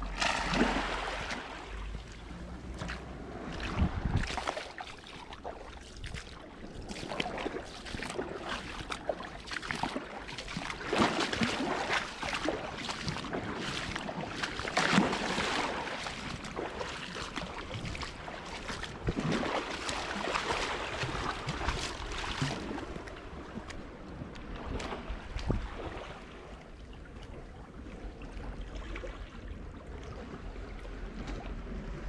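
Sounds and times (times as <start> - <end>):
seawater slapping against seafront: 0.0 - 1.7
wind buffeting microphone: 0.0 - 4.6, 17.3 - 19.5, 20.7 - 26.2.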